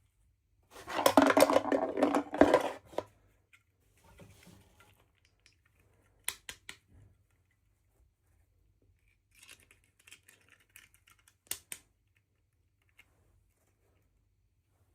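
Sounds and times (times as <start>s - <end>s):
toy packaging rustling: 0.8s - 3.1s
small plastic pieces clicking: 9.3s - 12.2s.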